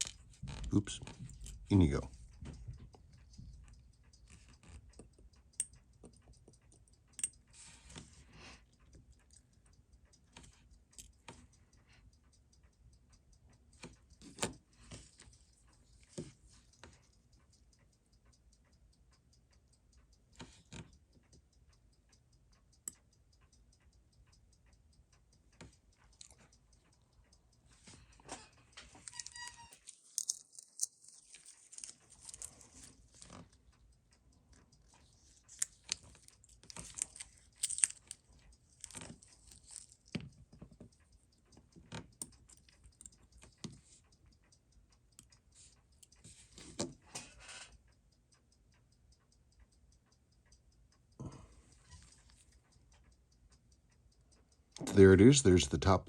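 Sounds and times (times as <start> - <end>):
low steady hum: 0.0 - 56.0.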